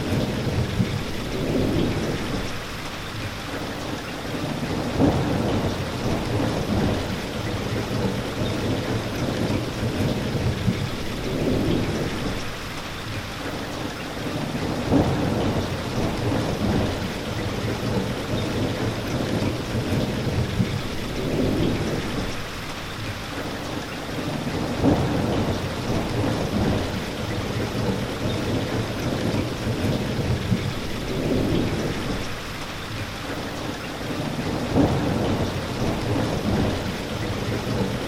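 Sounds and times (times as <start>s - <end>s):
steady rain: 0.0s - 38.0s
low thunder rumbles: 4.6s - 12.6s, 14.6s - 22.5s, 24.5s - 32.4s, 34.4s - 38.0s.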